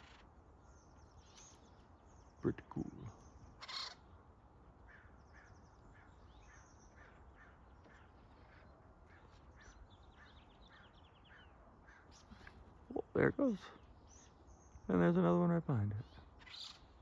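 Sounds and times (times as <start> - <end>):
bird chattering trills: 0.0 - 0.3, 2.4 - 4.1
woodpecker harsh calls: 0.0 - 0.4, 3.2 - 4.2, 4.8 - 14.9, 16.0 - 17.0.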